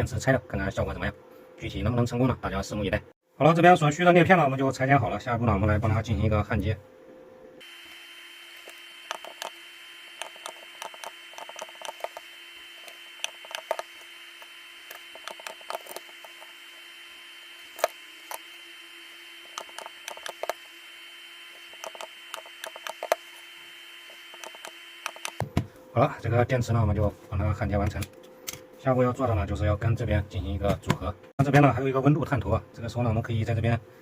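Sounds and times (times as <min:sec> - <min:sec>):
steady low hum: 0:03.8 - 0:34.0.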